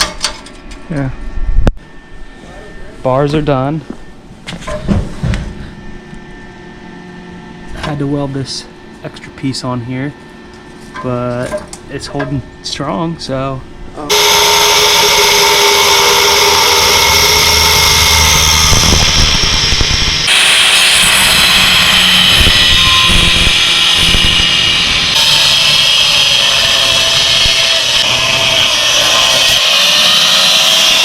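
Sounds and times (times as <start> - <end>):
small motor running: 14.0 - 31.0.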